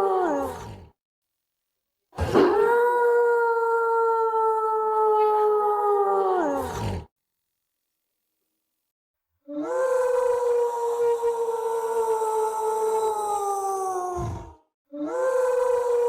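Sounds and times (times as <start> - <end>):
long wolf-like howl: 0.0 - 0.9, 2.3 - 7.1, 9.5 - 16.0.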